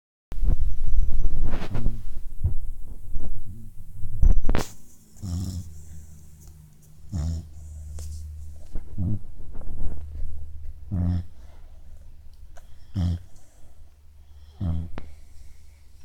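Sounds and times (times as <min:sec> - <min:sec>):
low snoring breaths: 0:05.1 - 0:16.0.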